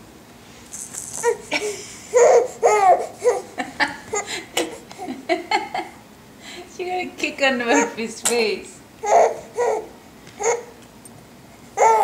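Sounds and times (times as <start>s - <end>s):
baby laughing: 1.2s - 6.0s, 9.0s - 10.7s, 11.8s - 12.0s.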